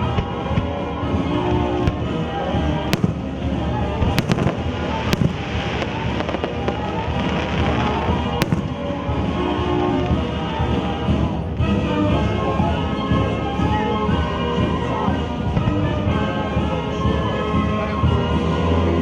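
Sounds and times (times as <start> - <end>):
fireworks bangs: 0.0 - 12.8, 15.4 - 17.1
music soundtrack: 0.0 - 19.0.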